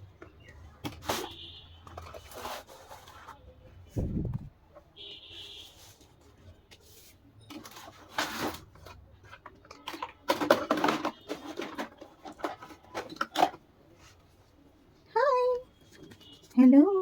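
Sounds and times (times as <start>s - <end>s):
plastic toy pieces clicking: 9.5s - 13.6s.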